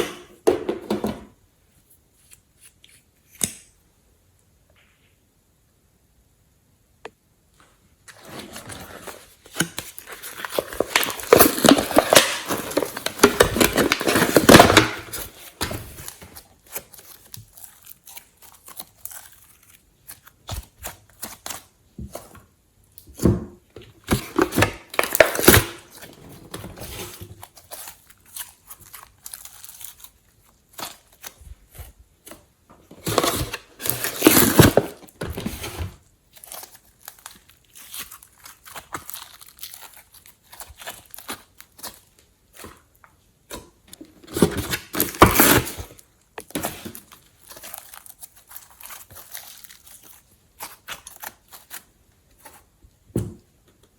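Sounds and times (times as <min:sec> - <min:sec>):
slime squishing and crackling: 0:09.3 - 0:23.2, 0:24.1 - 0:32.3, 0:36.0 - 0:43.9, 0:44.5 - 0:52.8.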